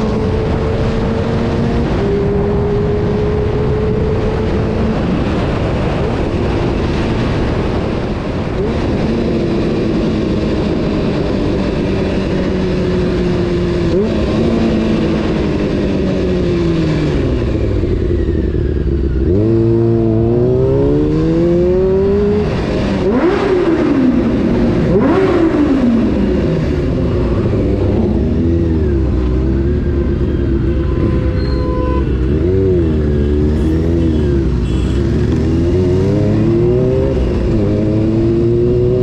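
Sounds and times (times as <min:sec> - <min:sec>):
motorcycle engine revving: 0:00.0 - 0:39.0.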